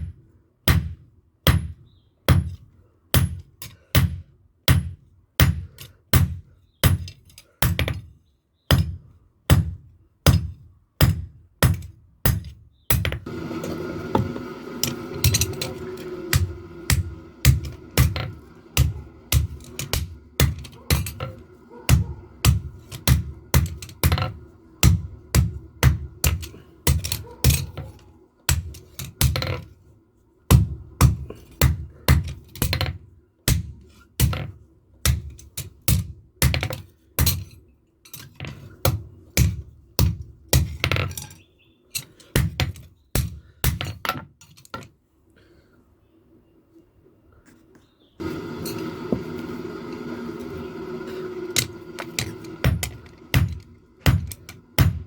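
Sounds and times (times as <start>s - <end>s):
hammer striking steel on anvil: 14.8s - 27.7s, 51.6s - 55.0s.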